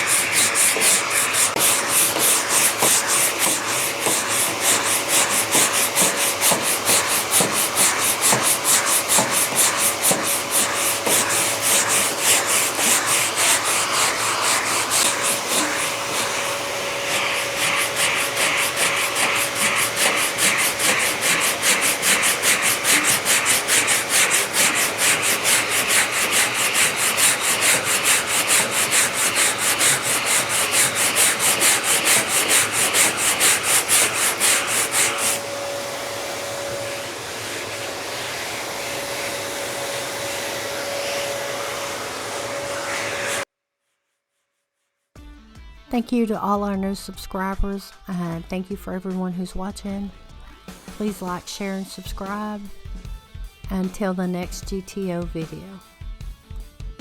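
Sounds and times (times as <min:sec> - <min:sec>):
sandpaper rasping: 0:00.0 - 0:35.5, 0:37.6 - 0:45.1.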